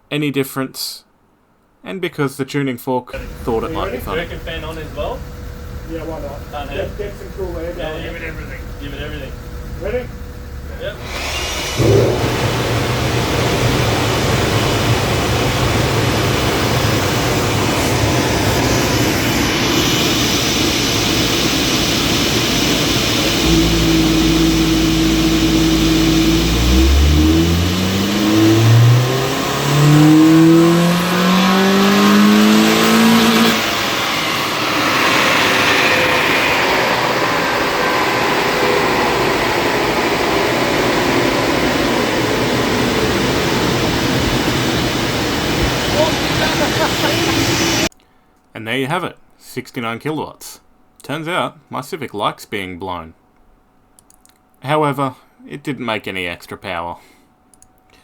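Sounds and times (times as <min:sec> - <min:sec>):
car engine revving at full throttle: 0:03.2 - 0:47.9
cooling fan: 0:03.2 - 0:47.9
leaf blower air rush: 0:03.2 - 0:47.9.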